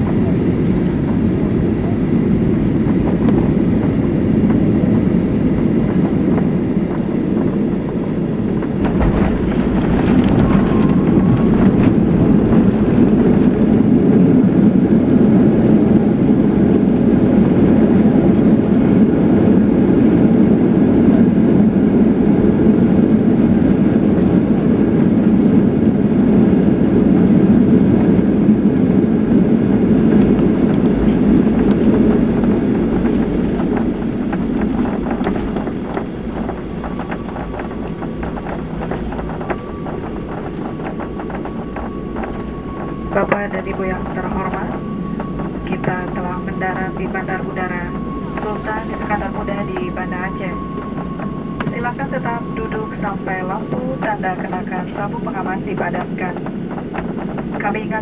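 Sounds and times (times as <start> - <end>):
jet engine cabin rumble: 0.0 - 58.0.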